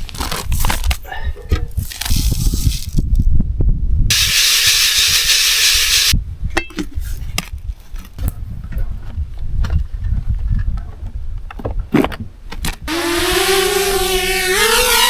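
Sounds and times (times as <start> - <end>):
wind rumble on microphone: 0.0 - 5.3, 6.1 - 15.0
loud steady hiss: 4.1 - 6.2.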